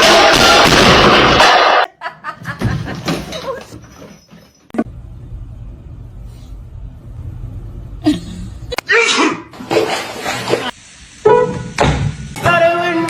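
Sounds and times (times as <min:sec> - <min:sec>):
person sneezing: 0:08.1 - 0:09.5.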